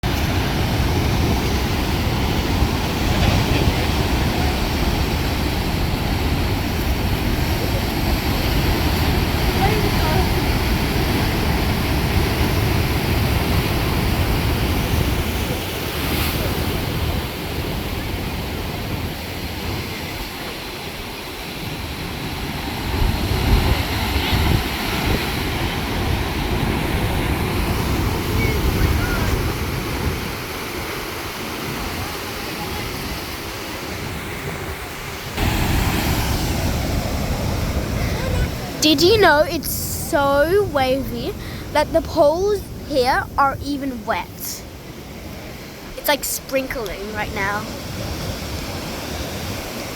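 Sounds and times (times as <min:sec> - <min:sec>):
ocean waves breaking: 0:00.0 - 0:49.9.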